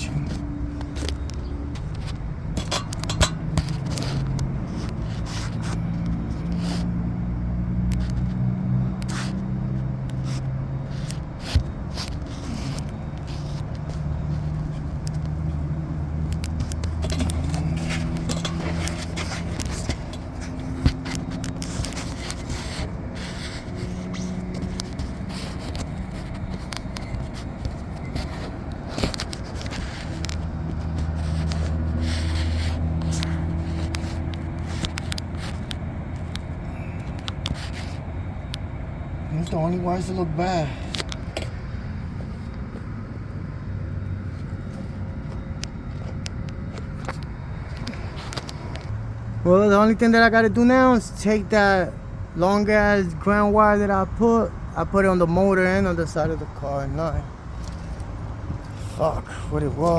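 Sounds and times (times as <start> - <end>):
phone handling and wiring clicks: 0.0 - 6.5, 10.9 - 38.7, 40.8 - 42.9, 44.4 - 48.9.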